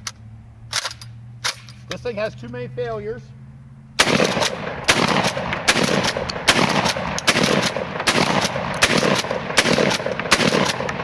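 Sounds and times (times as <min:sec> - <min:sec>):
shotgun fired rapidly: 0:04.0 - 0:11.0.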